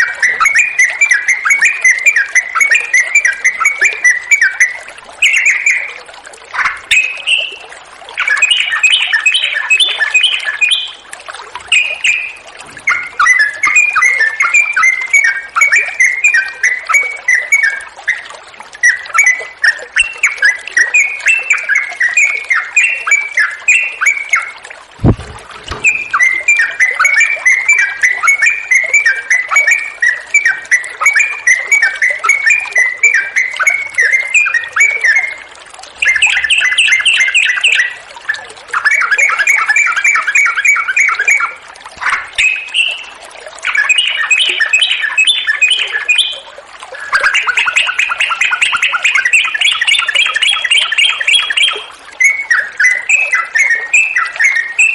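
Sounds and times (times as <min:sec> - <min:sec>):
bird singing chirps and trills: 0:00.0 - 0:54.9
low thump: 0:25.0 - 0:26.2.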